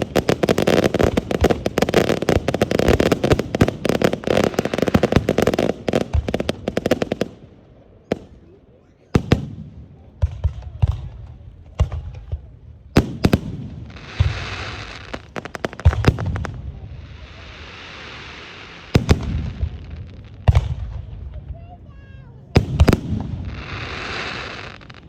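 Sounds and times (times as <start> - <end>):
firework cracks: 0.0 - 7.4, 11.7 - 21.6, 22.6 - 25.0
fireworks sizzling hiss: 0.0 - 7.4, 13.0 - 20.5, 22.6 - 25.0.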